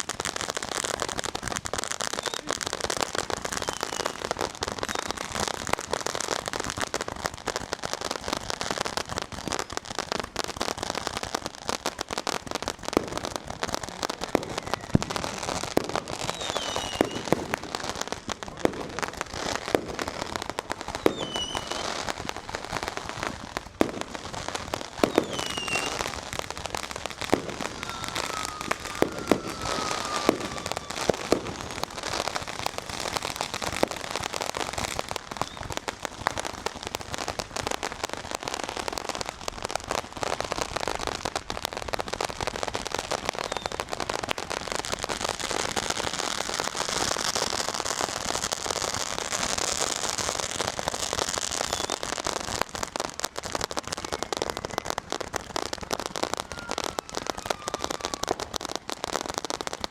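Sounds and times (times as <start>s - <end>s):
firecrackers crackling: 0.0s - 59.9s
falling firework whistles: 1.8s - 5.6s, 14.1s - 17.8s, 20.8s - 22.6s, 23.8s - 35.9s, 43.0s - 44.0s, 51.1s - 52.6s, 53.3s - 59.3s.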